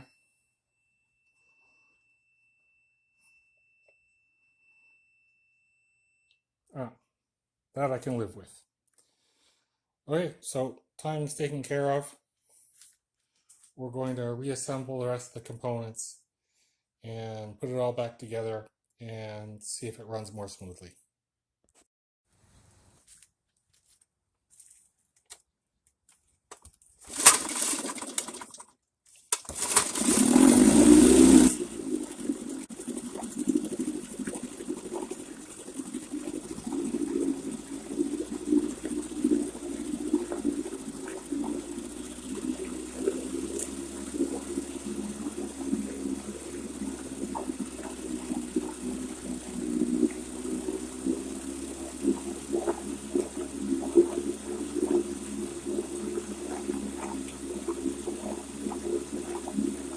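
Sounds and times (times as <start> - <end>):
outboard motor starting and running: 27.0 - 28.7, 29.4 - 59.9.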